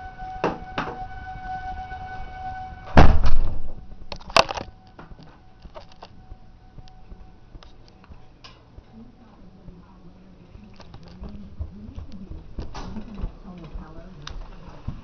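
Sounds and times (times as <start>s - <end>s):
warning siren steady tone: 0.0s - 10.1s
loud thump: 0.4s - 1.2s, 2.8s - 5.2s.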